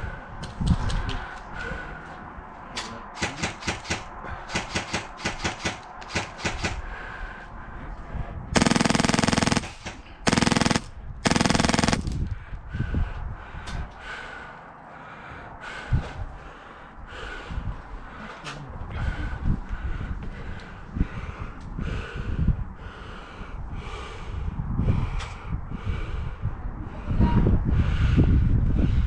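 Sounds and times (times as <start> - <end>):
airsoft guns firing: 3.2 - 6.9, 8.6 - 12.2.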